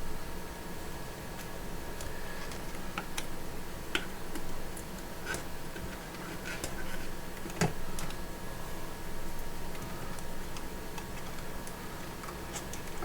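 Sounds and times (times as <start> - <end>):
faint steady hum: 0.0 - 13.0.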